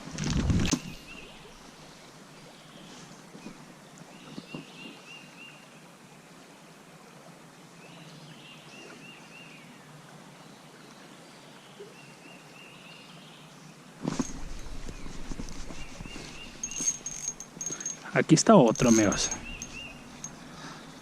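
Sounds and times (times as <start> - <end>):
background hiss: 12.7 - 21.0
bird singing: 14.8 - 18.1, 18.8 - 21.0.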